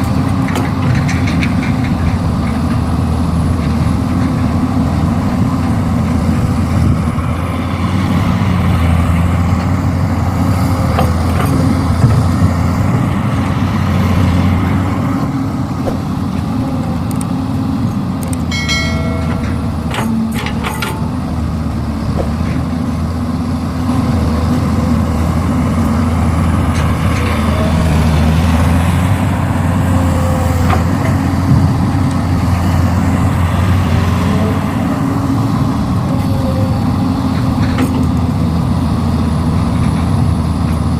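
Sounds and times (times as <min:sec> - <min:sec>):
diesel engine rumbling under load: 0:00.0 - 0:40.9
high-pitched squeal: 0:24.0 - 0:38.0.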